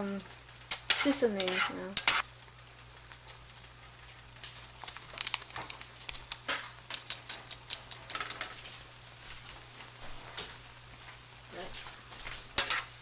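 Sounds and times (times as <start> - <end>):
utensil scraping a pot: 0.7 - 2.2, 12.6 - 12.9.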